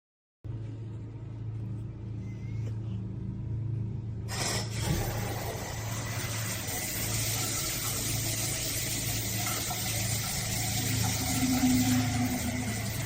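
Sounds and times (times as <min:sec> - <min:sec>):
low hum: 0:00.4 - 0:13.0
water spraying from shower head: 0:04.3 - 0:13.0.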